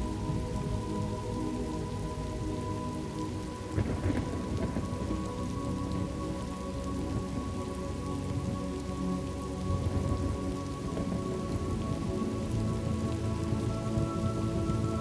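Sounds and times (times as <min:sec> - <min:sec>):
steady rain: 0:00.0 - 0:15.0
low thunder rumble: 0:03.7 - 0:06.4.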